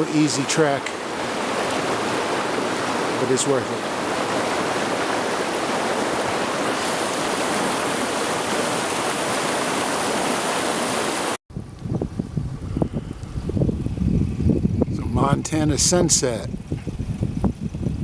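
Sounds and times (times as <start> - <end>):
river rushing over rocks: 0.0 - 11.4
gusty low rumble: 11.5 - 18.0.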